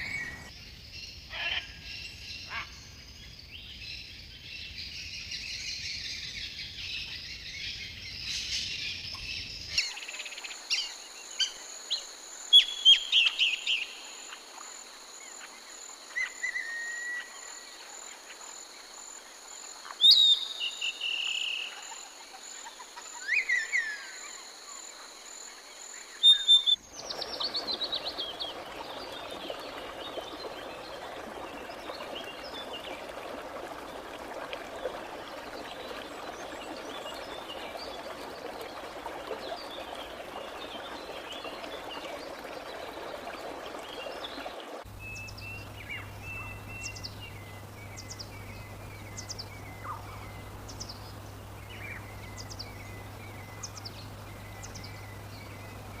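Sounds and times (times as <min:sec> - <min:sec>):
running water rushing: 0:00.0 - 0:00.5, 0:09.7 - 0:56.0
wild birds calling: 0:26.2 - 0:56.0.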